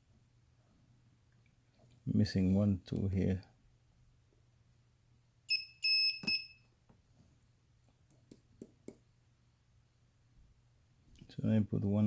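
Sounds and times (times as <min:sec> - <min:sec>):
short high beeps: 0:05.5 - 0:06.6.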